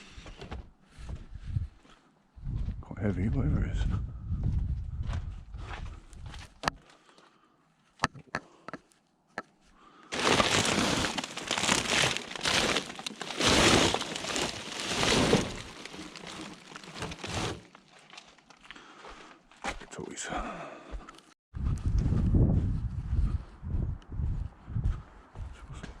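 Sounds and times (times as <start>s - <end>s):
rubbish rustling and crinkling: 10.1s - 18.7s.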